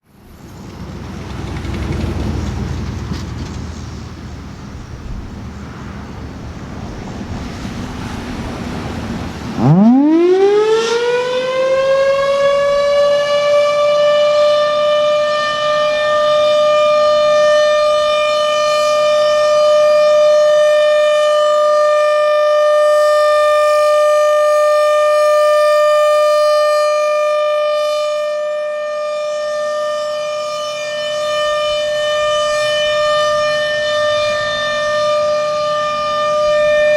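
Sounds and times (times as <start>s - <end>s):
warning siren winding up: 9.6s - 36.9s.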